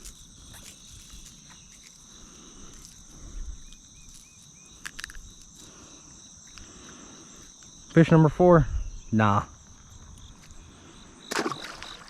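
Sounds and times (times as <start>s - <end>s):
high-pitched insect chorus: 0.0s - 12.0s.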